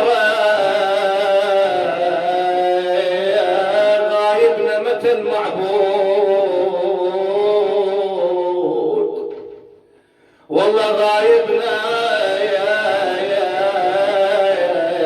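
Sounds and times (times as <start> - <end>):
man chanting a lament: 0.0 - 9.5, 10.4 - 15.0.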